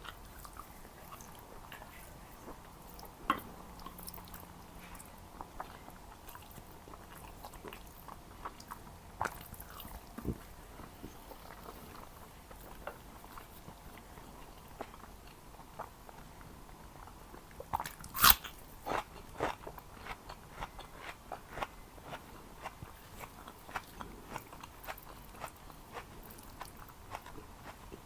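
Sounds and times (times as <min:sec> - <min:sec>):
person chewing food: 0:00.0 - 0:28.0.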